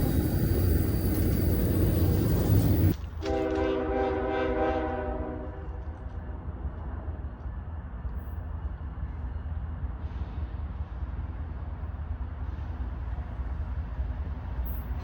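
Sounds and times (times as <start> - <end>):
train rumble: 0.0 - 15.0
locomotive air horn: 3.2 - 5.8.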